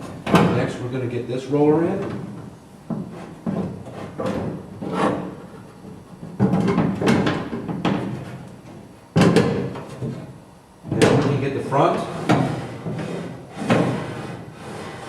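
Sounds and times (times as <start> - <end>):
metallic clunks and knocks: 9.2 - 10.2.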